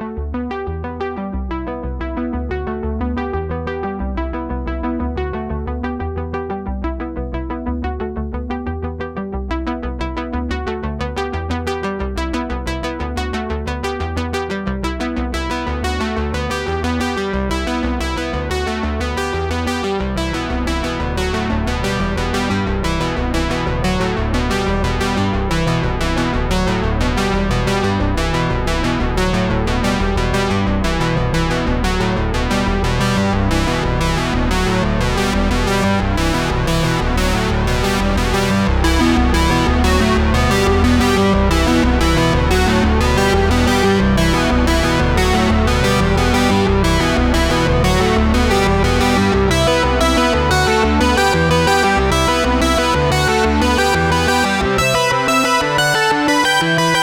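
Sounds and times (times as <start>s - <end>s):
steady bass line: 0.0s - 57.0s
synthesizer and electric piano: 0.0s - 57.0s
fast electronic keyboard music: 15.0s - 57.0s.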